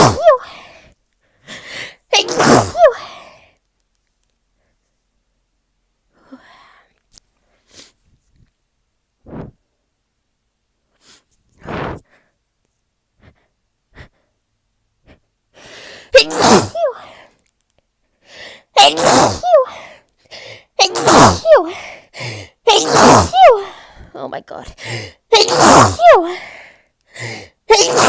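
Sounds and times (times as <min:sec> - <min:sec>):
person sneezing: 0:00.0 - 0:00.7, 0:02.1 - 0:03.2, 0:11.1 - 0:12.0, 0:16.0 - 0:17.1, 0:18.8 - 0:19.9, 0:20.8 - 0:23.8, 0:24.8 - 0:26.5, 0:27.3 - 0:28.0
person breathing: 0:00.4 - 0:02.0, 0:06.1 - 0:08.0, 0:11.0 - 0:12.4, 0:13.2 - 0:14.4, 0:15.0 - 0:16.2, 0:18.1 - 0:18.7, 0:19.7 - 0:20.7, 0:21.7 - 0:22.6, 0:23.6 - 0:24.2, 0:24.8 - 0:25.2, 0:26.3 - 0:27.6.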